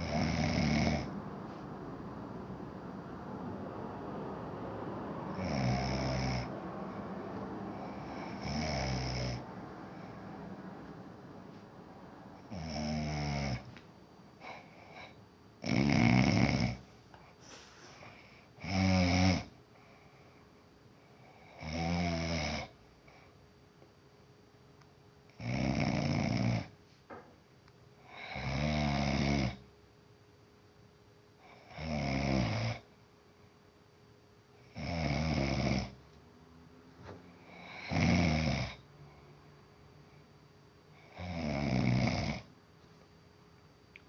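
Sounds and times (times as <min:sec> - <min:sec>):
person snoring: 0:00.0 - 0:01.2, 0:05.3 - 0:06.5, 0:07.7 - 0:10.2, 0:12.4 - 0:13.7, 0:14.5 - 0:16.8, 0:25.4 - 0:26.7, 0:28.1 - 0:29.6, 0:34.7 - 0:36.0, 0:37.4 - 0:38.9, 0:41.0 - 0:42.5.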